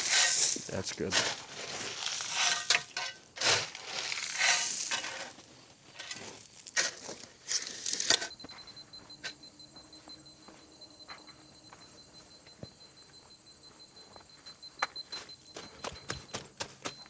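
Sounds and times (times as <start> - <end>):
hand tools scraping through gravel: 0.0 - 8.3.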